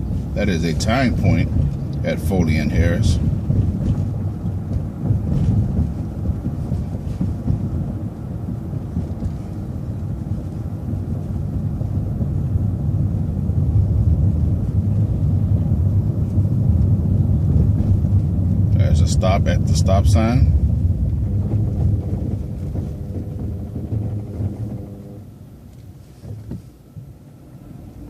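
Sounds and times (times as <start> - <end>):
bus engine and road rumble: 0.0 - 28.0
faint rattles: 0.2 - 27.2.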